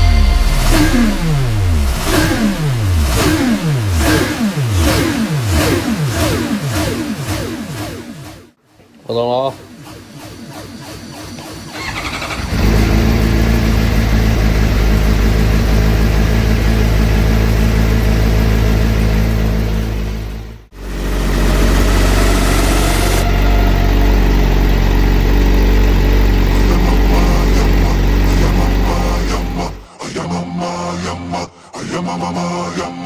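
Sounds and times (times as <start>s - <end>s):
motorcycle engine idling: 11.7s - 29.9s.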